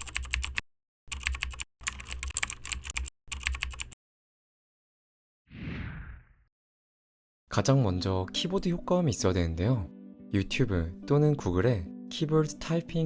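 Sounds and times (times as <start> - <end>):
mechanical keyboard typing: 0.0 - 4.0.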